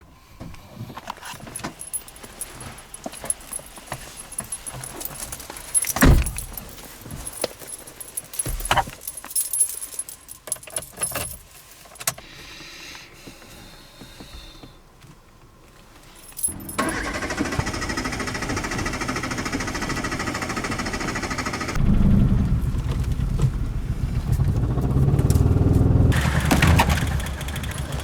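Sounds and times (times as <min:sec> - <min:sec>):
keys jangling: 0:01.2 - 0:12.2, 0:16.1 - 0:17.1, 0:27.1 - 0:28.0.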